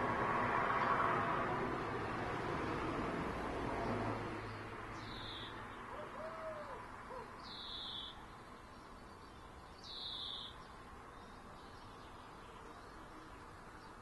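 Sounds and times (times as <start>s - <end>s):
distant traffic hum: 0.0s - 14.0s
bird short high call: 5.1s - 8.2s, 9.8s - 10.6s.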